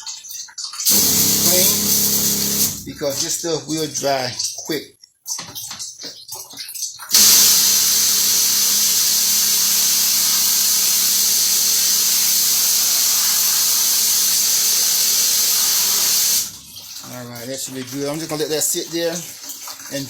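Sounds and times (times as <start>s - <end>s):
water spray hissing: 0.9s - 4.2s, 7.1s - 17.3s.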